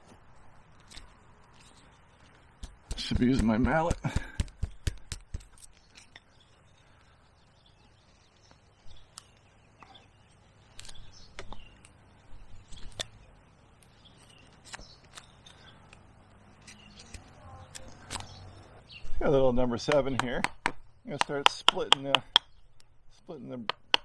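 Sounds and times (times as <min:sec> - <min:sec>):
gouge tapping wood: 0:02.6 - 0:05.6, 0:19.9 - 0:22.5, 0:23.6 - 0:24.0
gouge clicks on wood: 0:02.6 - 0:05.7, 0:17.1 - 0:18.3, 0:19.9 - 0:22.9, 0:23.6 - 0:24.0.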